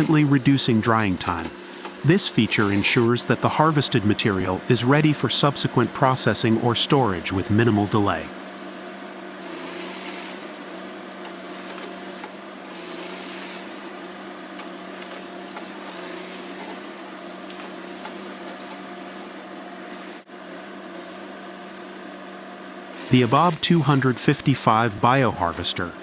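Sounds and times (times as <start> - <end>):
harvesting machinery humming: 0.0 - 8.4, 23.0 - 26.0.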